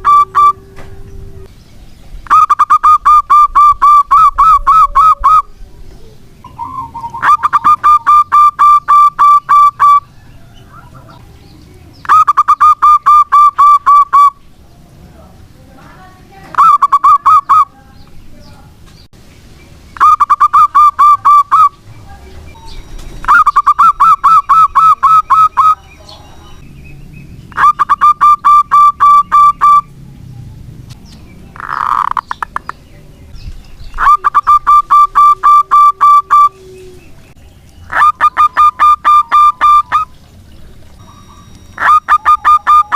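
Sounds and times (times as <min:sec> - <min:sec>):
dove cooing: 0:00.0 - 0:01.5, 0:02.3 - 0:11.3, 0:22.8 - 0:25.8, 0:27.5 - 0:30.0, 0:33.9 - 0:42.9.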